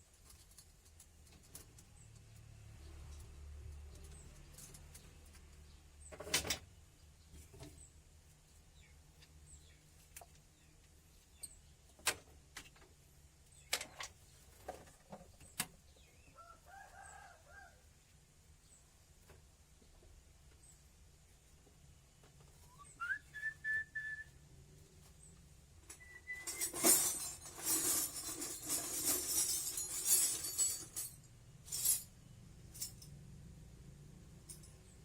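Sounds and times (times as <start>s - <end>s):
hand tools knocking and clinking: 25.9s - 32.1s.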